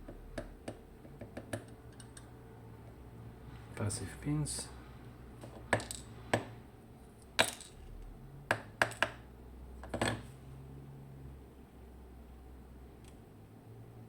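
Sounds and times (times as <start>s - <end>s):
small metal parts clicking: 1.6s - 2.3s.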